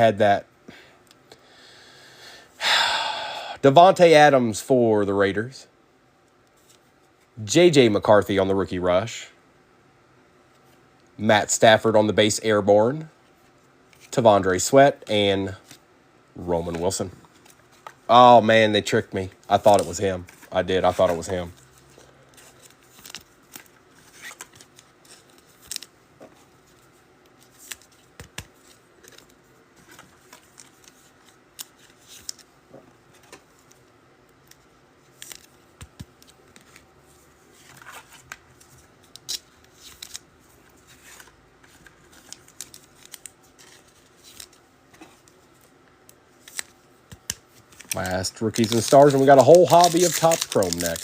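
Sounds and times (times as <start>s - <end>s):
cards and wrappers clicking: 46.4s - 51.0s.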